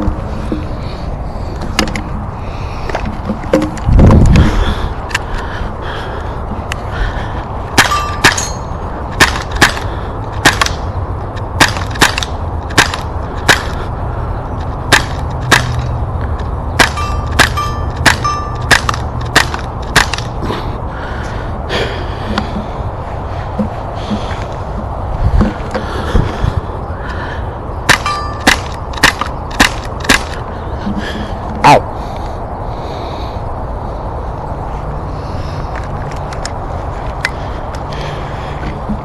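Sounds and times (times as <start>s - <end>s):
air gun shots: 7.7s - 10.9s, 11.6s - 13.8s, 14.9s - 15.9s, 16.8s - 20.4s, 27.8s - 30.4s
ringing ping: 7.8s - 8.8s, 16.8s - 18.7s, 28.0s - 28.5s.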